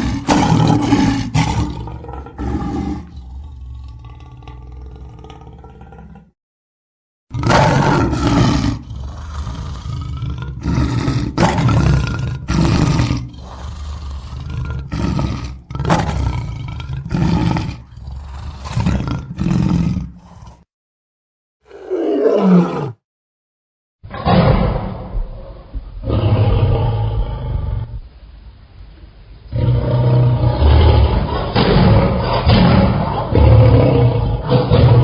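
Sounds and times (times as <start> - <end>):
lion roaring: 0.0 - 6.3, 7.3 - 20.7, 21.7 - 23.0, 24.1 - 27.9, 29.5 - 35.0.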